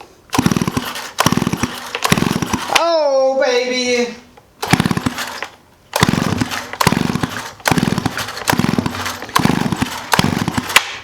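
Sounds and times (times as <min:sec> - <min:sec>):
engine spinning with rapid ticking: 0:00.3 - 0:02.8, 0:04.6 - 0:10.9
chainsaw recoil starter pulls: 0:00.3 - 0:02.9, 0:04.6 - 0:11.0.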